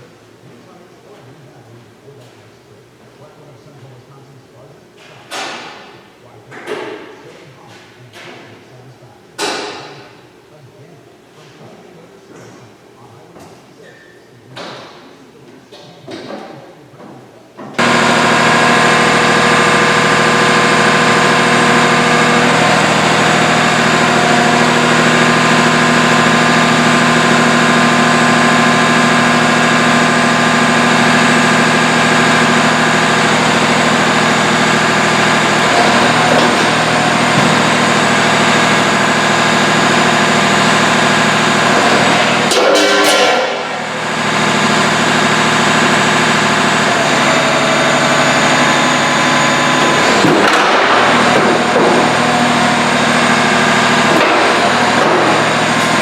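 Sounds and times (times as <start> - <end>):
engine running steadily: 17.8 - 56.0.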